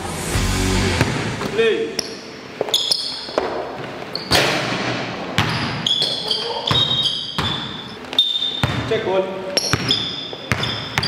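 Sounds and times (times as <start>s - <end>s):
sneakers squeaking on floor: 2.0s - 4.5s, 5.4s - 11.0s
basketball bouncing on court: 5.4s - 5.8s, 6.7s - 8.0s, 8.6s - 9.0s, 9.6s - 11.0s.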